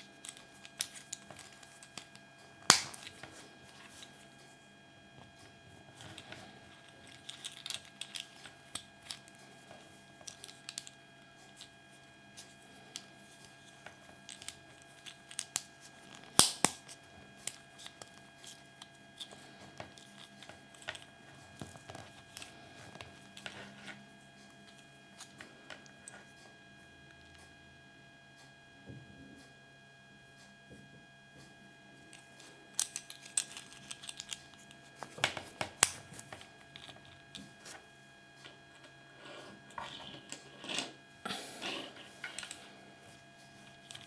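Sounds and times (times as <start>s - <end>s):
plastic toy pieces clicking: 2.7s - 3.2s, 7.1s - 9.2s, 16.3s - 16.8s, 32.8s - 34.4s
sharp plastic snap: 2.7s - 3.2s, 16.3s - 17.0s, 35.4s - 36.2s.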